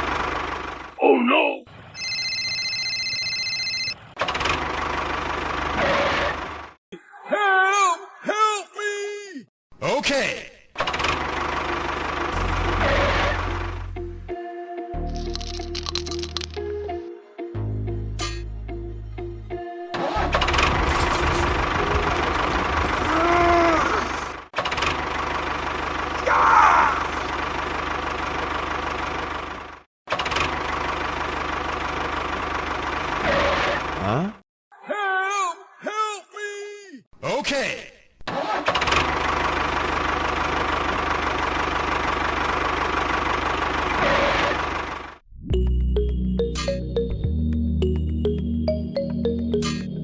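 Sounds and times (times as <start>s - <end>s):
engine knocking rhythmically: 0.0s - 1.0s, 4.4s - 5.8s, 10.8s - 13.8s, 21.6s - 23.0s, 24.4s - 26.2s, 27.3s - 33.3s, 38.9s - 45.2s.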